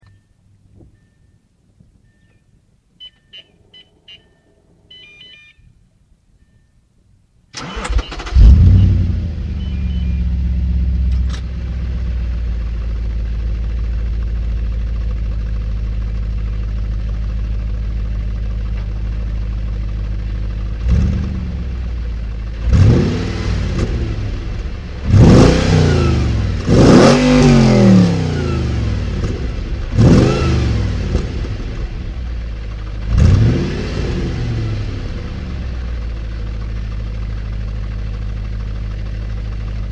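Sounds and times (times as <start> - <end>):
short electronic beeps: 0.9 - 5.7, 7.8 - 10.4
car engine starting and idling: 7.5 - 39.9
car engine revving: 7.6 - 16.3, 20.6 - 38.6.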